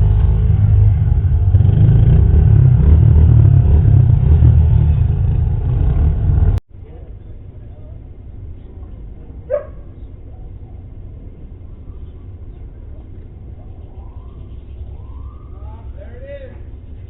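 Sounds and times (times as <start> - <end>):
steady low rumble: 0.0 - 17.0
dog bark: 9.5 - 10.0
faint police siren wail: 11.6 - 16.2.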